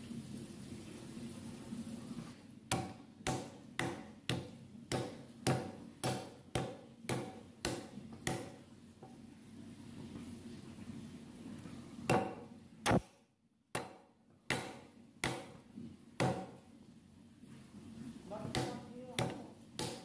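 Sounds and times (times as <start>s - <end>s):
knife chopping on cutting board: 2.7s - 8.6s, 13.8s - 15.6s, 16.2s - 16.6s, 18.4s - 20.0s.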